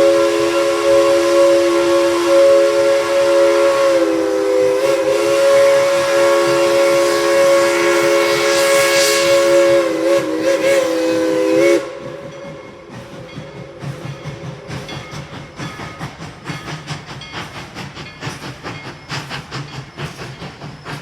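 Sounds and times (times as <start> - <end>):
steam whistle blast: 0.0 - 12.4
steam hissing: 0.0 - 21.0.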